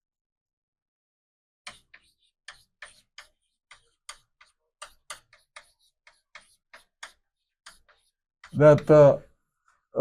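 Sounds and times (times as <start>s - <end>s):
tapping and scratching on a board: 1.7s - 8.9s.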